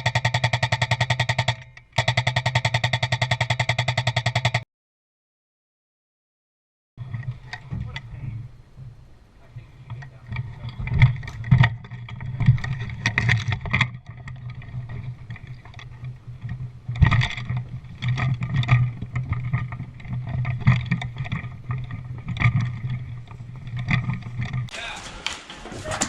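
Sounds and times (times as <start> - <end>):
steady low hum: 7.0 - 24.7.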